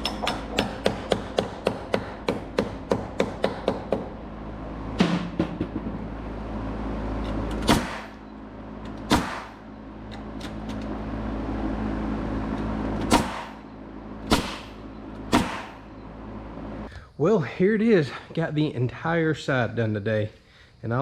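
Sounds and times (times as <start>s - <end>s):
steady machine hum: 0.0s - 19.8s
sharp loud impacts: 4.9s - 6.2s, 7.6s - 8.3s, 9.0s - 9.7s, 13.0s - 15.9s.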